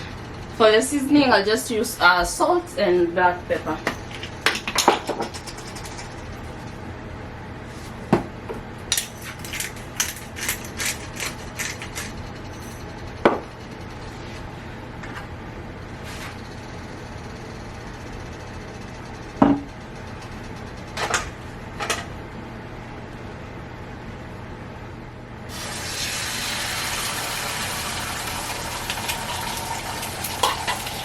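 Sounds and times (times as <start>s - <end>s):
steady low hum: 0.0s - 26.3s
utensils clicking and tapping: 8.9s - 12.2s.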